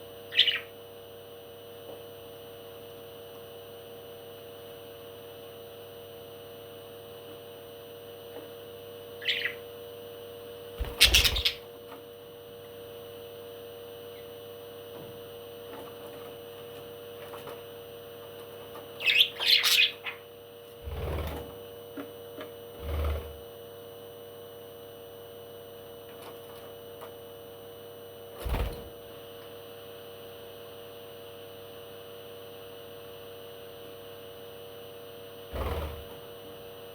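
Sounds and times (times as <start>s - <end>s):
steady background hum: 0.0s - 36.9s
parrot chirping: 0.3s - 0.7s, 9.2s - 9.6s, 10.8s - 11.6s, 19.0s - 20.2s.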